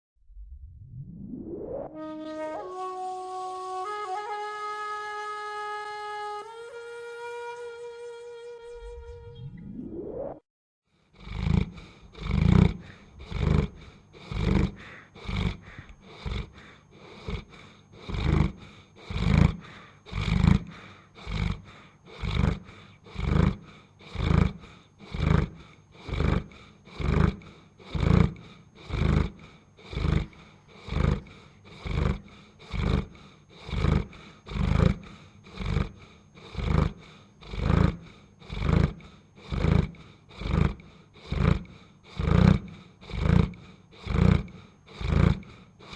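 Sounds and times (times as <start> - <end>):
dog snoring: 11.0 - 45.9.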